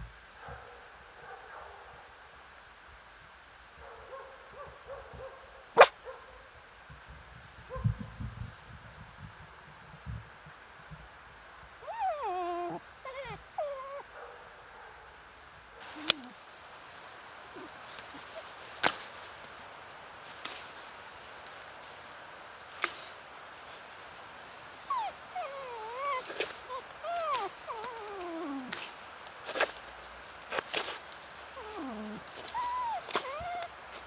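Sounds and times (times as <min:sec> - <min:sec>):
small dog whining: 0:11.8 - 0:14.0, 0:15.8 - 0:16.4, 0:24.8 - 0:28.8, 0:31.5 - 0:33.7.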